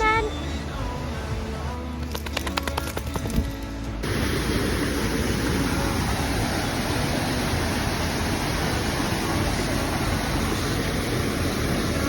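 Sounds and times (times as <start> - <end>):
waterfall roaring: 4.0 - 12.0.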